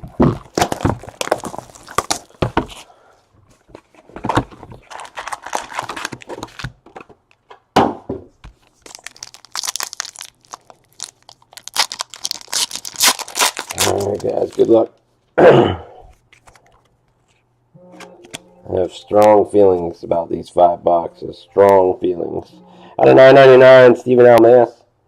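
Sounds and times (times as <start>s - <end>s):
card packaging tearing and crinkling: 0.2s - 2.4s, 4.7s - 6.8s, 8.8s - 14.8s.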